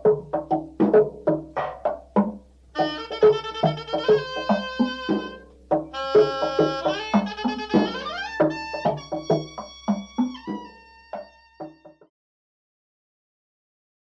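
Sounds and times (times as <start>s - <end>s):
hand drum and wood block rhythm: 0.0s - 12.1s
held melodic notes: 2.6s - 12.0s.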